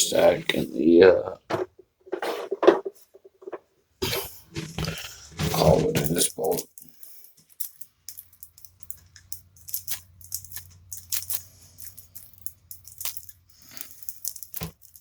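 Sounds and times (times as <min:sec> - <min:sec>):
plastic wrapping crinkling: 0:04.2 - 0:15.0.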